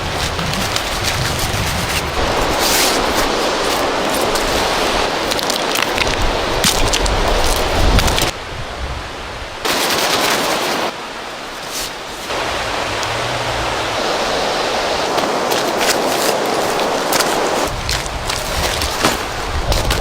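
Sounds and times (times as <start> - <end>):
rushing river water: 0.0 - 20.0
sharp crackles: 14.9 - 20.0.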